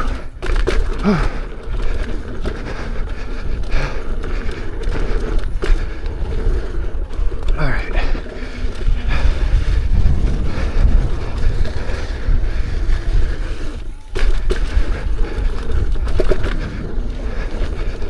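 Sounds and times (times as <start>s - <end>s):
sharp knocks from bumps: 0.0s - 6.9s, 13.4s - 18.0s
wheel rolling on dirt trail: 0.0s - 18.0s
wind rumbling on microphone: 0.0s - 18.0s.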